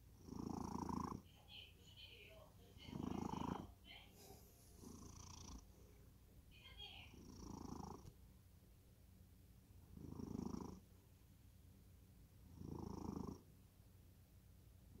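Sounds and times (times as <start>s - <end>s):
cat snoring faintly: 0.0s - 1.4s, 2.7s - 6.1s, 6.8s - 8.1s, 9.8s - 10.9s, 12.4s - 13.5s.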